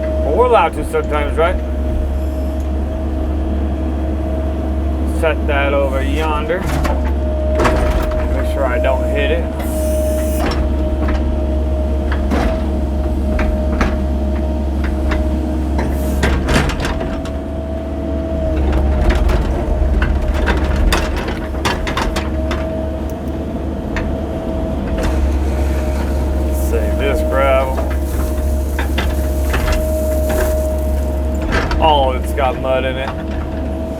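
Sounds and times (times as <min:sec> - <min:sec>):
excavator diesel engine droning: 0:00.0 - 0:33.9
hydraulic whine: 0:00.0 - 0:33.9
bucket digging dirt and gravel: 0:25.0 - 0:33.2.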